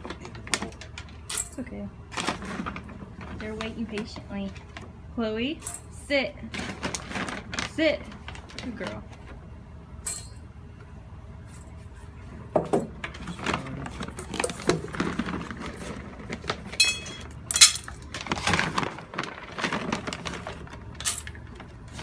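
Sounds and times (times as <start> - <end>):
dry kibble rattling in bowls: 0.0 - 4.9, 6.5 - 9.1, 13.1 - 22.0.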